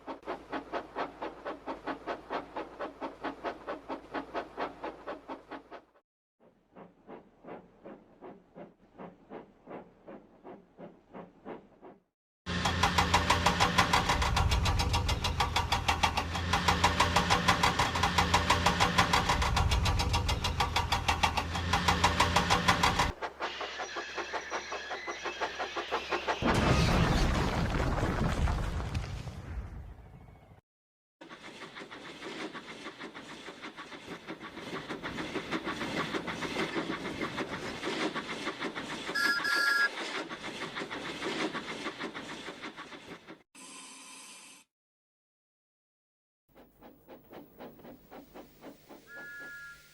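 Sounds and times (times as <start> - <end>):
train clattering: 0.0 - 6.0, 12.5 - 26.5, 31.2 - 43.4, 46.6 - 49.8
two-note train whistle: 49.0 - 49.9.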